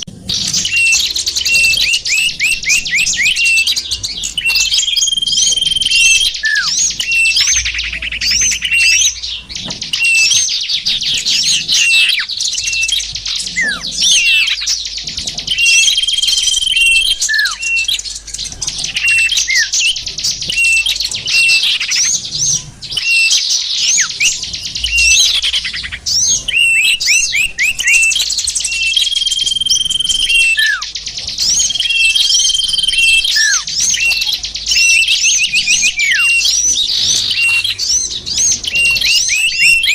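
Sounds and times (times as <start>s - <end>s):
songbird chirps and trills: 0.0s - 39.9s
steady held whistle: 0.6s - 9.2s, 15.5s - 18.0s, 23.0s - 39.9s.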